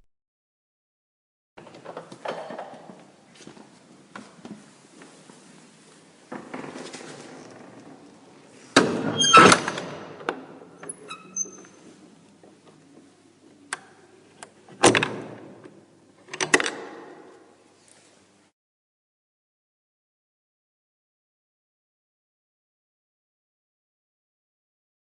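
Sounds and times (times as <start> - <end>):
door squeak: 8.8 - 10.1, 10.8 - 11.8.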